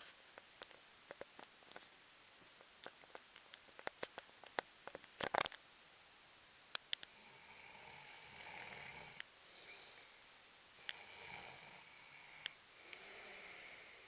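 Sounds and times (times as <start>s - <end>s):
person snoring: 7.1s - 10.2s, 10.8s - 14.0s.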